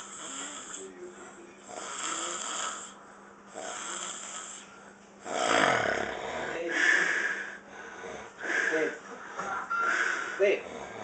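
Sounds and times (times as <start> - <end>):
man snoring: 0.0 - 1.0, 1.6 - 9.0, 9.9 - 11.0.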